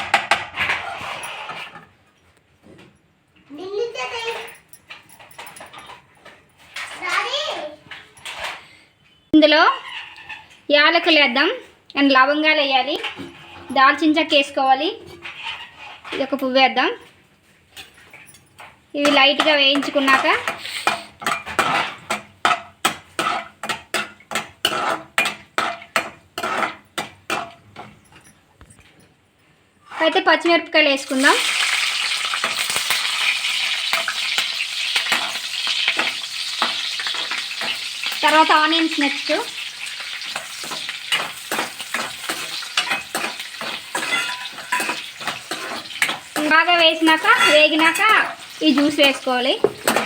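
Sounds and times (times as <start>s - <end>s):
spoon scraping and knocking a pan: 0.0s - 2.0s, 12.9s - 16.4s, 17.7s - 28.4s, 31.2s - 50.0s
onions sizzling in oil: 31.0s - 50.0s.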